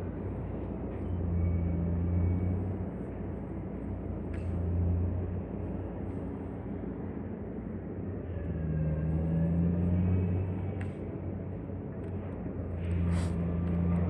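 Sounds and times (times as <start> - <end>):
low engine drone: 0.0 - 14.0.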